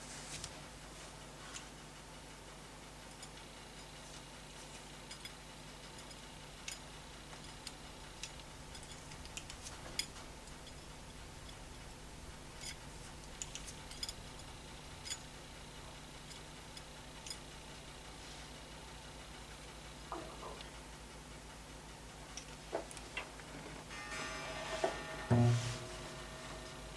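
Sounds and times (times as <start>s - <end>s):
faint steady hum: 0.0s - 26.9s.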